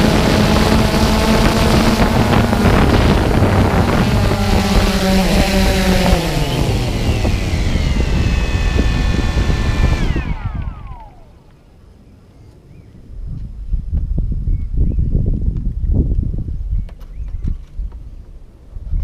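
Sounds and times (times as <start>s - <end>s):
drone propellers buzzing: 0.0s - 11.5s
wind noise: 0.0s - 19.0s.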